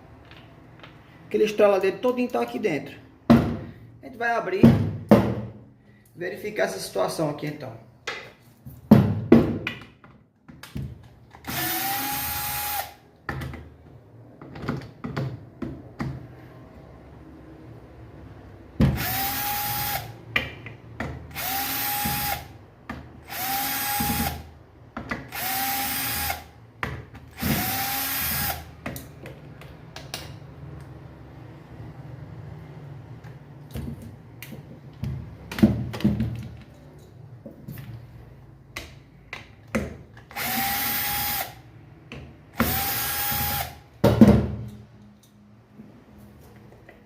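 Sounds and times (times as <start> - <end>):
electric drill-driver running: 11.5 - 13.0, 19.0 - 20.1, 21.4 - 22.5, 23.3 - 24.4, 25.3 - 26.5, 27.4 - 28.7, 40.3 - 41.6, 42.6 - 43.8.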